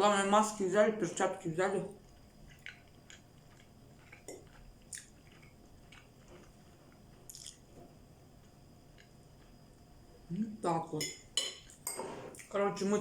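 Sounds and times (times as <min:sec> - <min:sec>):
person chewing food: 0:02.0 - 0:07.8, 0:08.4 - 0:09.8.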